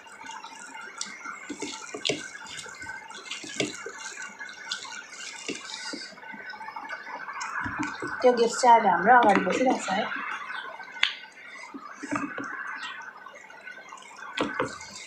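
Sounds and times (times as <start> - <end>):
wet chewing and mouth smacks: 0.2 - 6.2, 10.3 - 13.0.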